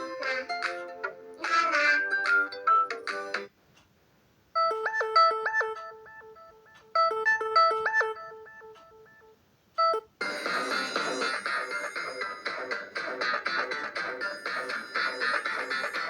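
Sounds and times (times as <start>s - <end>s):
bell-like electronic ringtone: 4.6s - 16.0s.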